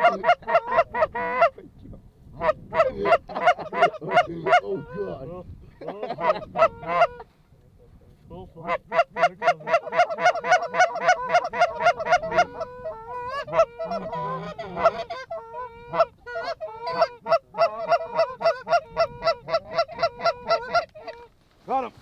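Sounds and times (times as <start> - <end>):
geese honking and clucking: 0.0 - 1.6, 2.4 - 21.4.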